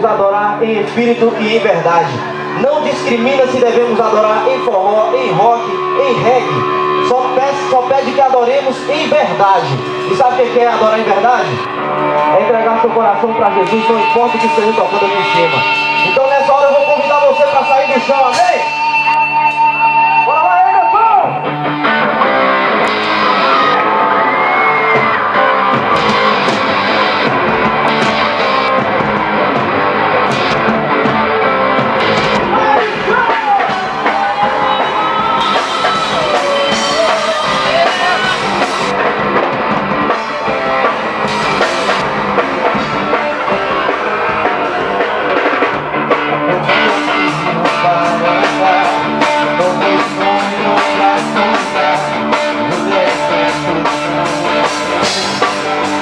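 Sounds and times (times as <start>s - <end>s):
drum kit: 0.0s - 56.0s
guitar: 0.0s - 56.0s
person singing: 32.5s - 38.8s, 46.5s - 56.0s.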